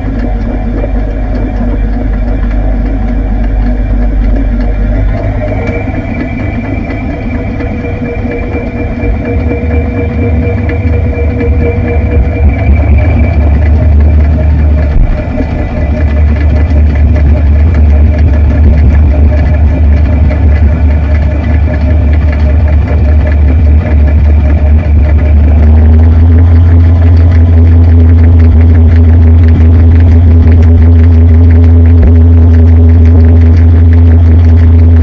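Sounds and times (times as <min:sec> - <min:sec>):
washing machine running: 0:00.0 - 0:35.0
faint high whines: 0:04.9 - 0:16.6.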